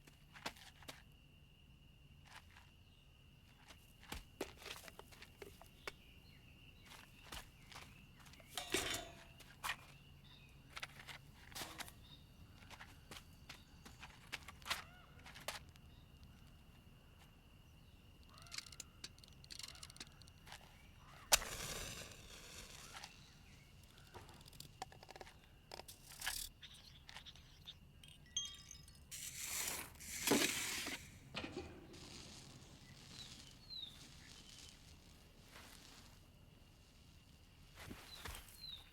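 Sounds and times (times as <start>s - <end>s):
faint steady high tone: 26.6s - 30.4s.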